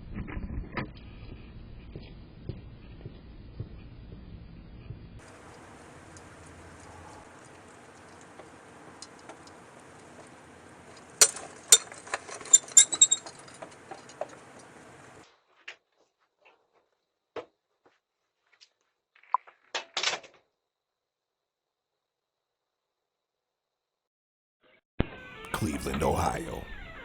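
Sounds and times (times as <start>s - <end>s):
microphone hiss: 25.5s - 26.7s.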